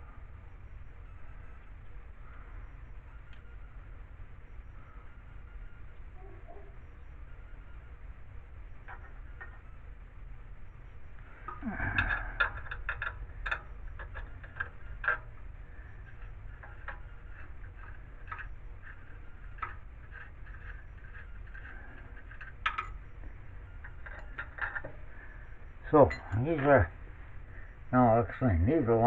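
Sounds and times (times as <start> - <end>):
small metal parts clicking: 11.4 - 25.2.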